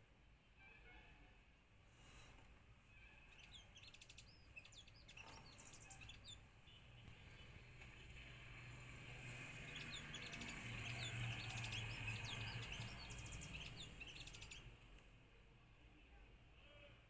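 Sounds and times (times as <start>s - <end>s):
faint low hum: 0.0s - 17.0s
bird chirping and twittering: 2.9s - 14.8s.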